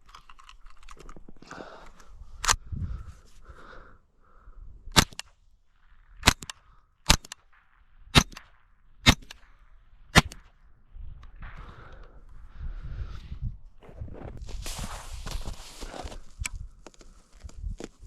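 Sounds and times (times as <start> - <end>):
rifle shots: 4.9 - 5.2, 6.2 - 7.4, 8.1 - 9.4, 10.1 - 10.5.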